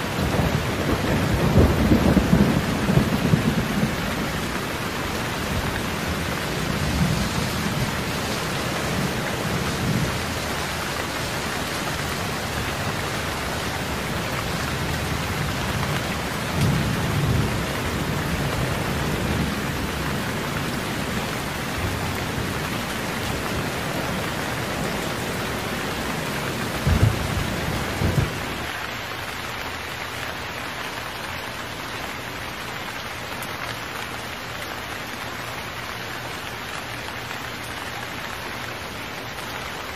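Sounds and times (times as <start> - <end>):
heavy rain pouring: 0.0 - 39.9
thunder rolling: 0.2 - 4.2, 26.2 - 28.5
sharp thunderclap: 26.8 - 28.5.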